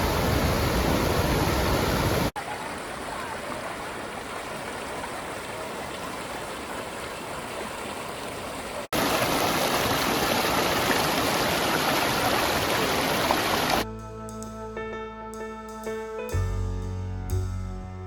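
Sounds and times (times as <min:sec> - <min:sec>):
rushing river and waterfall: 0:00.0 - 0:13.8.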